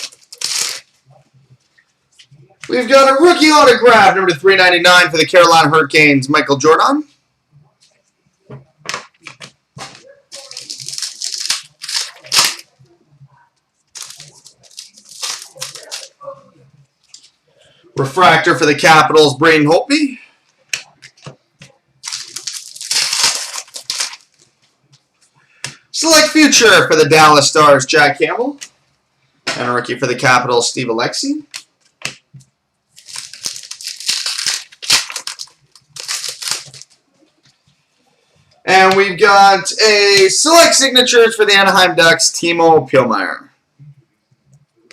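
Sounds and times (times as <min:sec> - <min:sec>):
sharp loud crinkle: 0:10.3 - 0:12.7, 0:13.9 - 0:16.2, 0:22.0 - 0:24.5, 0:33.0 - 0:37.0.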